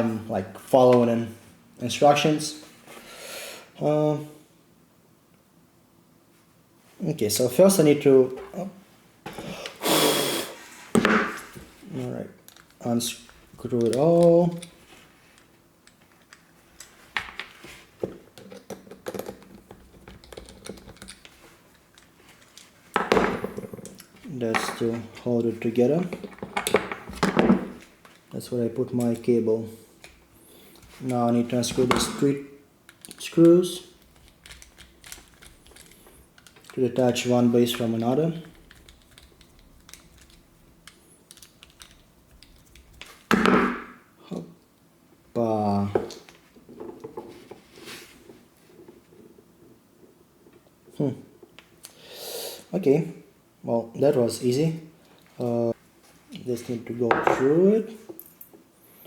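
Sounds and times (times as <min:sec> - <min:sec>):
plastic parts clicking: 0:12.5 - 0:14.8, 0:18.4 - 0:24.8, 0:32.9 - 0:33.3, 0:33.9 - 0:36.8, 0:37.7 - 0:43.3.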